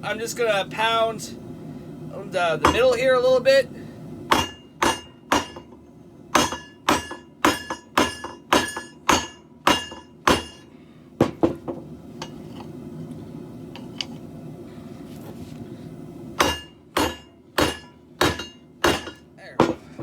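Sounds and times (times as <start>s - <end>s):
hammer striking steel on anvil: 4.3s - 11.4s, 16.4s - 19.8s.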